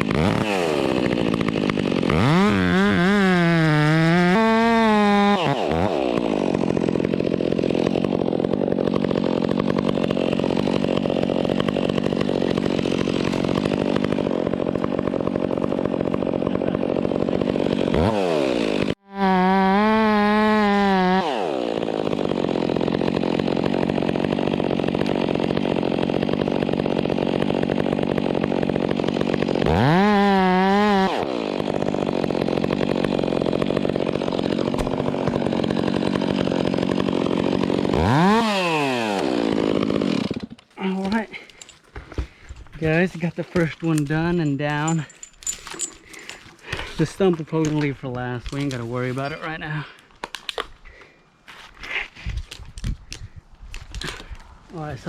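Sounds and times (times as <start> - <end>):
chainsaw revving: 0.0 - 49.9.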